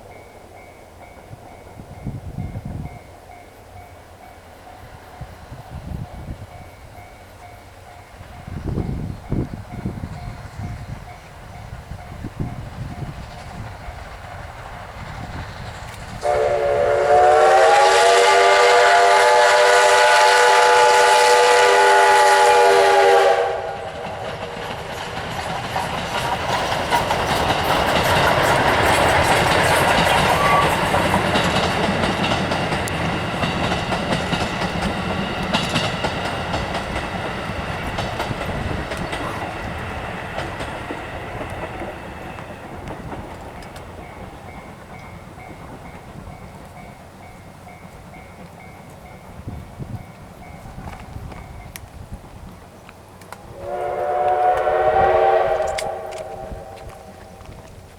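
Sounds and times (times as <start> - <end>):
steam locomotive whistle: 16.2 - 24.6, 26.5 - 39.9, 53.5 - 57.5
train wheels clattering over rail joints: 23.8 - 54.8.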